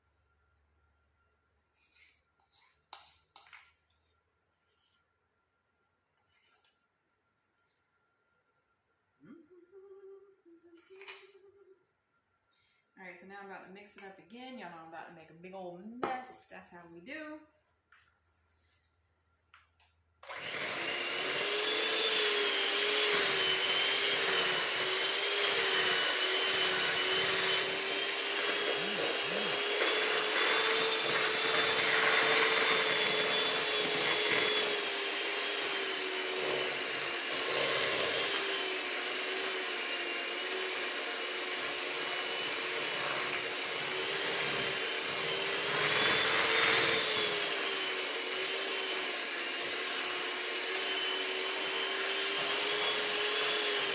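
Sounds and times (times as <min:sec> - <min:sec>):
electric mixer running: 0:20.2 - 0:53.9.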